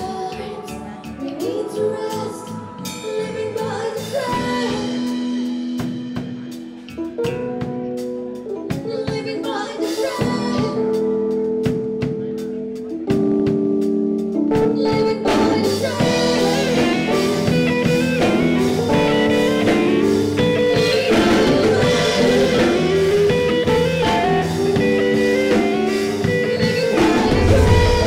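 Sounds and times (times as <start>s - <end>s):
rock band with guitar and drums: 0.0s - 28.0s.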